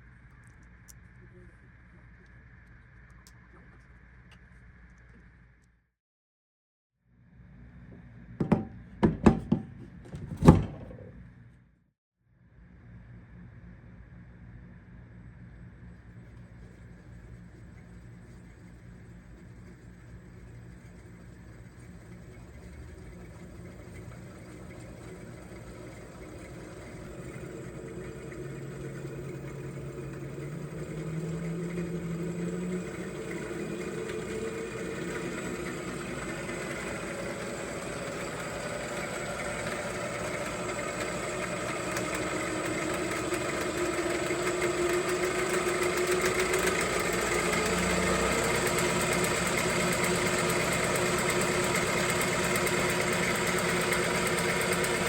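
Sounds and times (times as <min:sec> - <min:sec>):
lathe machine hum: 0:17.1 - 0:55.0.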